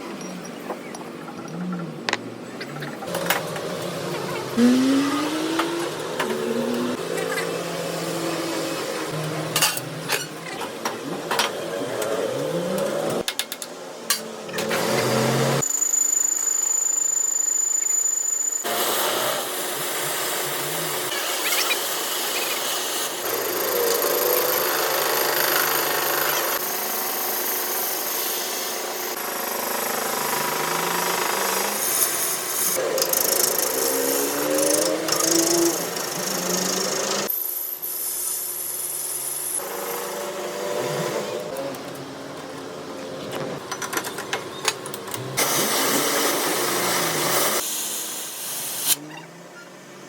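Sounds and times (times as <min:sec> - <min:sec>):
grinding machine noise: 0:18.4 - 0:37.8.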